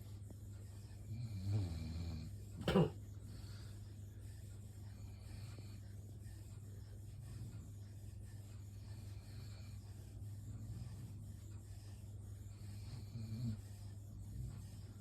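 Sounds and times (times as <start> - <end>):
soft raspy snoring: 1.0 - 2.9, 12.5 - 15.0.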